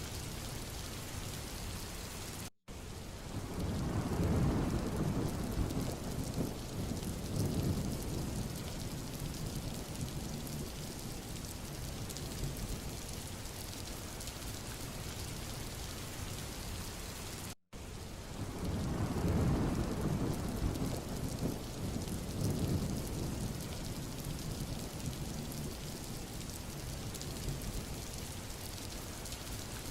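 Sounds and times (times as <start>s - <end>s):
steady rainfall: 0.0s - 29.9s
rolling thunder: 3.3s - 10.9s, 18.4s - 25.8s.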